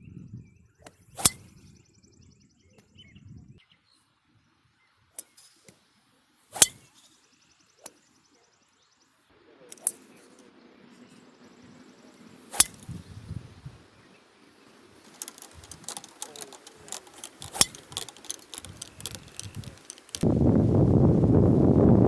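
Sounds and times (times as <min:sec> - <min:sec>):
golf driver striking ball: 0:12.5 - 0:13.0, 0:15.1 - 0:19.9.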